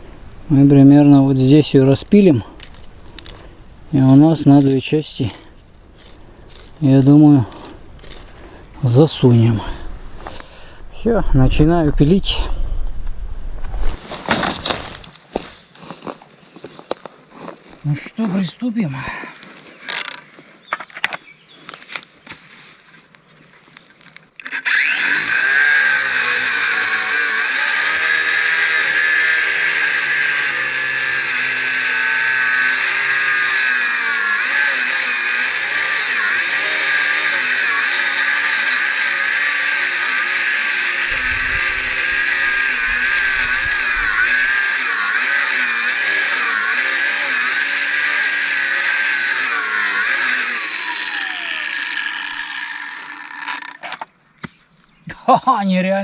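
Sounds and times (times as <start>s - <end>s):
angle grinder cutting metal: 24.5s - 54.0s.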